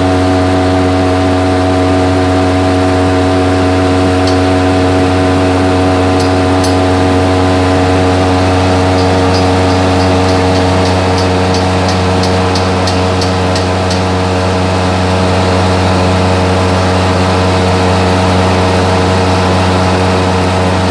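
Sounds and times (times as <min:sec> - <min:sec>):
electric fan humming: 0:00.0 - 0:20.9
light regular ticks: 0:04.2 - 0:04.7, 0:06.2 - 0:06.9, 0:08.9 - 0:14.3.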